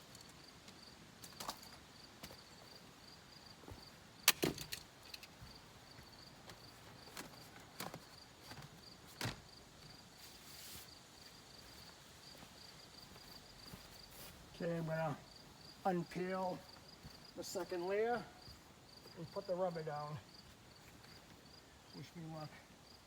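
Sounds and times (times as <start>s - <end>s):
crickets chirping: 0.0s - 23.0s
handling clicks and knocks: 4.2s - 5.4s.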